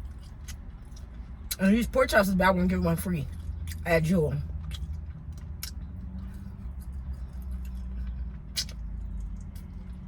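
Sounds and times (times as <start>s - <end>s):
low hum inside a car: 0.0s - 10.0s
person chewing food: 4.5s - 10.0s
lip smacks: 6.8s - 9.7s
wet mouth clicks: 8.5s - 9.7s.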